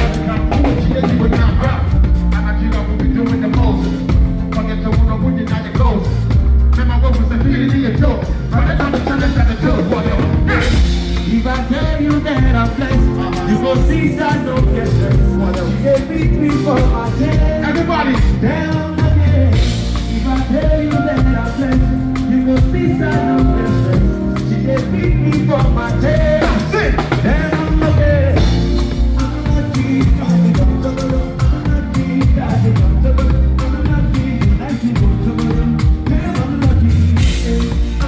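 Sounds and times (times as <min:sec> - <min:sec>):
drum kit hits: 0:00.0 - 0:02.4
live band playing: 0:00.0 - 0:38.0
person singing: 0:06.9 - 0:38.0.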